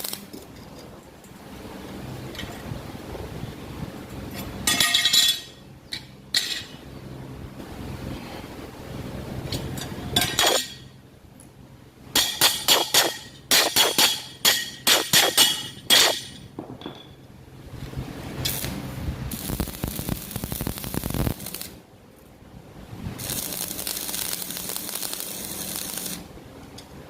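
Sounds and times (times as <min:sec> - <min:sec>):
hammer striking metal: 0:12.2 - 0:17.2
crackling hiss: 0:17.8 - 0:21.9, 0:23.0 - 0:26.3.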